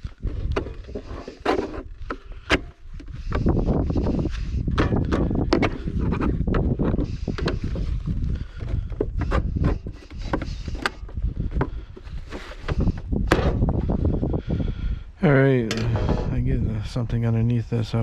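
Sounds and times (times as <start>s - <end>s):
knocks and clanks on metal panel: 4.7s - 7.8s, 12.7s - 13.7s, 15.7s - 16.4s
low rumble: 13.0s - 17.9s.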